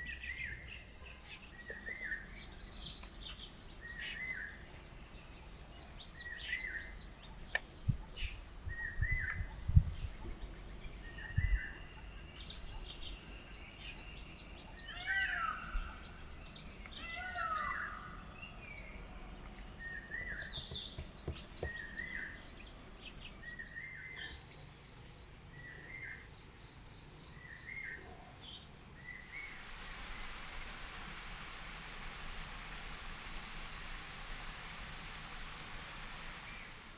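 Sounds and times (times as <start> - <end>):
high-pitched insect drone: 1.6 - 24.3
birds chirping: 5.2 - 26.4.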